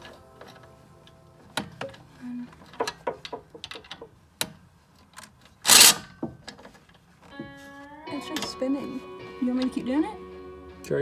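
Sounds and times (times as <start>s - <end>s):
metallic clicks of hand tools: 5.2s - 6.1s.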